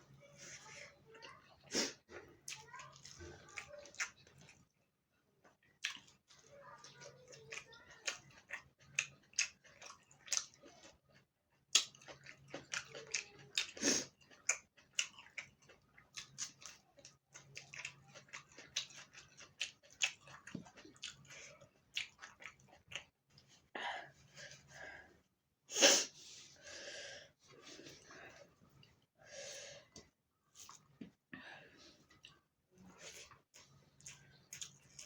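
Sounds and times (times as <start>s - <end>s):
person chewing and biting food: 7.5s - 11.0s, 11.7s - 23.1s, 33.0s - 35.0s.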